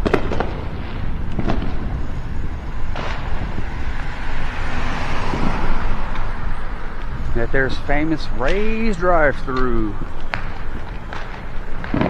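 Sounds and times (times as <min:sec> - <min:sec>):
firecracker bangs: 0:00.0 - 0:03.8, 0:08.2 - 0:12.0
road noise: 0:00.0 - 0:12.0
wind on microphone: 0:00.0 - 0:12.0.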